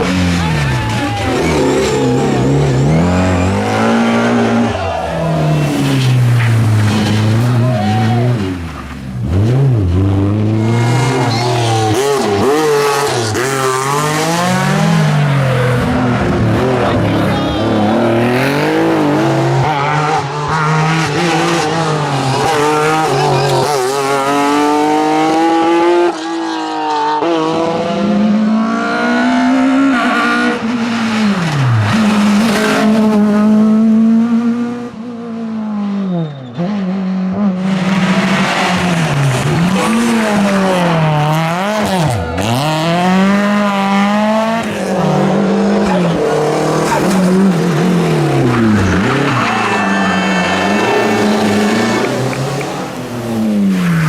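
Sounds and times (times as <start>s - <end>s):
rally car engines revving: 0.0s - 54.0s
tyres squealing: 46.8s - 53.2s.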